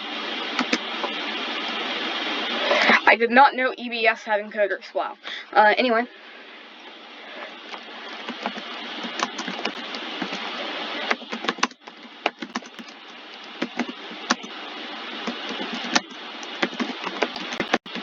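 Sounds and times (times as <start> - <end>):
steady hiss: 0.0 - 18.0
keyboard keys clicking: 8.3 - 10.4, 11.1 - 14.5, 15.2 - 18.0.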